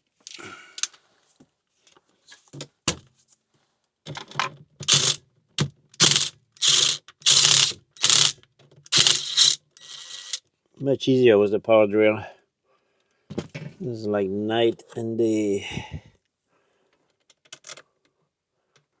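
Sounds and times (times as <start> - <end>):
power drill whirring: 4.9 - 5.2, 6.0 - 8.3, 8.9 - 10.4.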